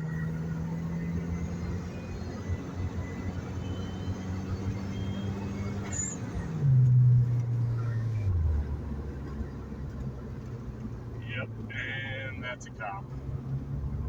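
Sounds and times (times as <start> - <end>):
car engine droning: 0.0 - 14.0.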